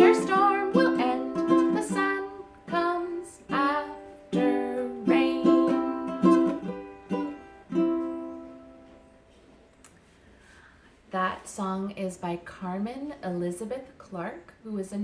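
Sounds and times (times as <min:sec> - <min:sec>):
woman singing: 0:00.0 - 0:06.6
strummed string instrument: 0:00.0 - 0:09.2.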